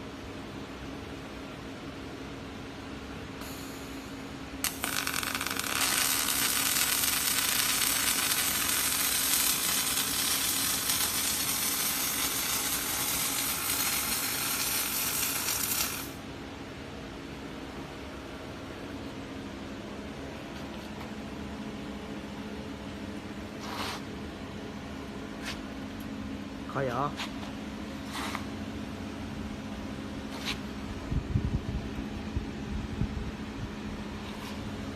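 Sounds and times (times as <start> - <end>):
welding arc crackling: 4.6 - 16.2
welding arc striking crack: 4.6 - 16.2.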